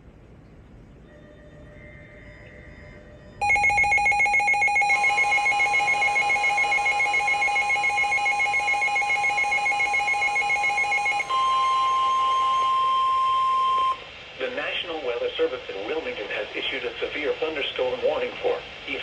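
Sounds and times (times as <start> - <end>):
alarm beeping in fast pulses: 3.4 - 14.0
steady warning alarm tone: 3.4 - 14.1.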